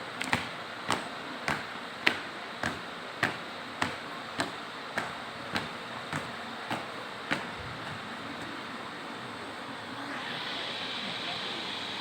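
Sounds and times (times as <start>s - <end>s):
marching beat of sharp knocks: 0.3s - 8.1s.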